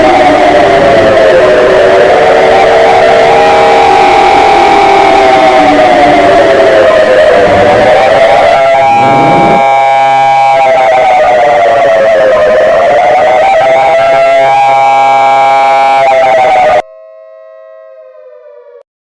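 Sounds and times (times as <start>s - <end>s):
distorted siren alert tone: 0.0s - 18.8s
harsh steady tones: 0.2s - 10.2s.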